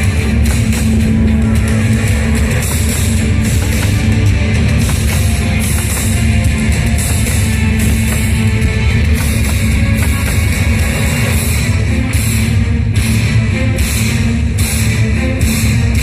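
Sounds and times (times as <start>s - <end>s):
loud rock music with drums and guitar: 0.0s - 16.0s.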